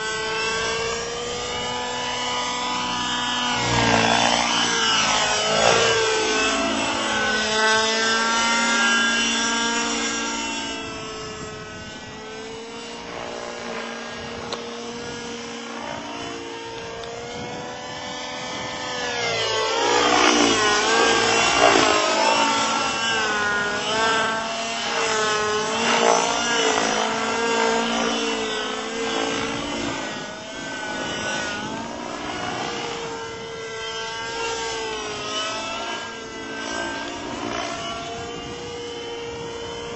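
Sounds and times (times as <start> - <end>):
model helicopter engine and rotor: 0.0 - 39.9.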